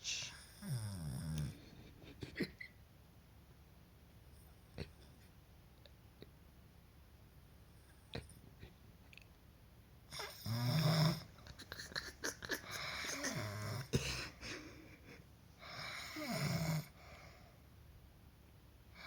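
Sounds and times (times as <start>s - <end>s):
person snoring: 10.2s - 11.3s, 12.5s - 14.4s, 15.8s - 17.0s.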